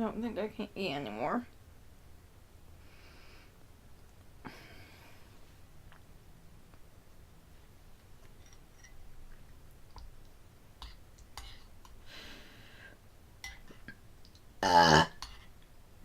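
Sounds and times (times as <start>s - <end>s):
soft breath: 2.8s - 3.6s, 4.4s - 5.7s, 11.4s - 13.0s
faint clicks and taps: 9.3s - 12.0s.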